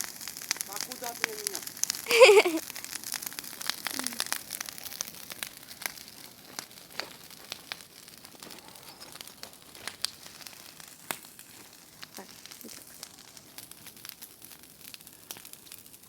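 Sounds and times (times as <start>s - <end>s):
faint hiss: 0.0s - 7.1s
wood bonfire crackling: 0.0s - 16.0s.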